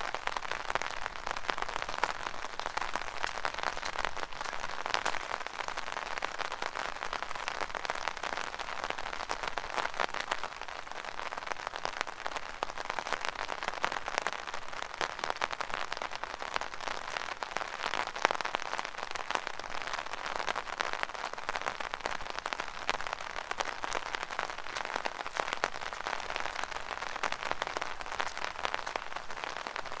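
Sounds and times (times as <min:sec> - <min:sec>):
rain pattering on umbrella: 0:00.0 - 0:30.0
footsteps splashing through puddles: 0:00.1 - 0:08.2, 0:23.5 - 0:30.0.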